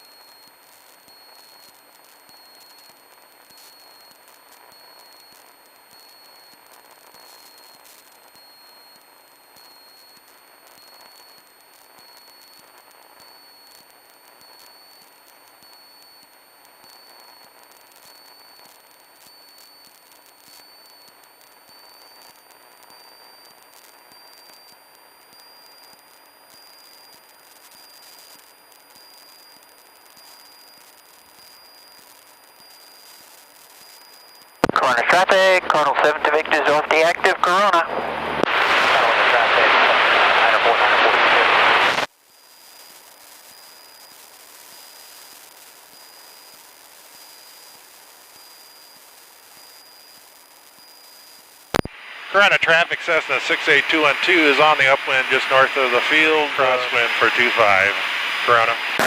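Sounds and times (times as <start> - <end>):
thin high-pitched whine: 0.0 - 59.0
radio hiss: 32.8 - 59.0
faint crackling clicks: 42.9 - 52.0.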